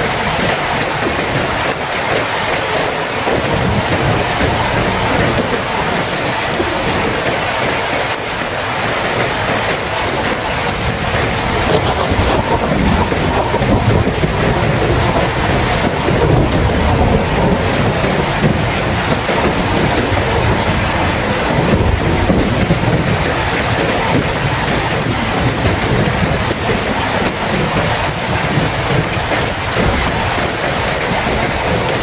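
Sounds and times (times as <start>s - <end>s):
heavy rain hissing: 0.0s - 32.0s
rolling thunder: 0.0s - 32.0s.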